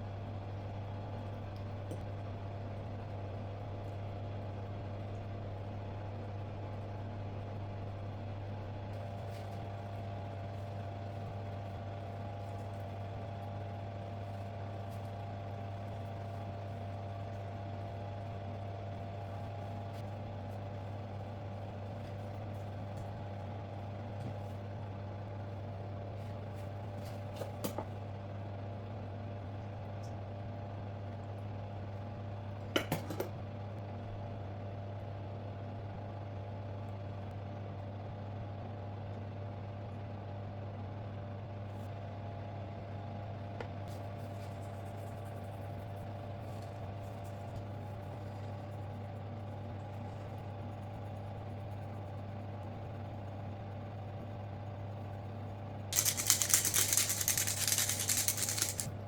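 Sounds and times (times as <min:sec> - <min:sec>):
kitchen appliance humming: 0:56.0 - 0:59.0.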